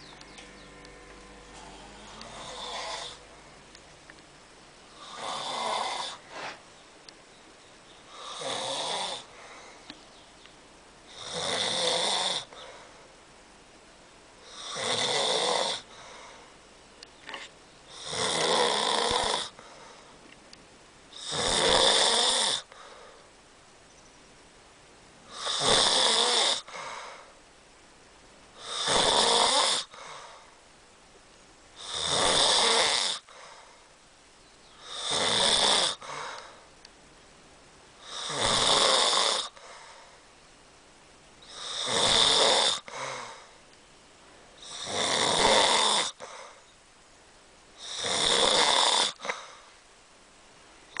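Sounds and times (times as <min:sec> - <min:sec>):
person snoring loudly: 0:00.6 - 0:03.6, 0:05.0 - 0:06.3, 0:08.1 - 0:09.4, 0:11.1 - 0:12.6, 0:14.4 - 0:16.0, 0:17.9 - 0:19.6, 0:21.2 - 0:22.8, 0:25.3 - 0:26.8, 0:28.6 - 0:30.4, 0:31.8 - 0:33.4, 0:34.8 - 0:36.5, 0:38.0 - 0:40.0, 0:41.4 - 0:43.5, 0:44.6 - 0:46.3, 0:47.8 - 0:49.6.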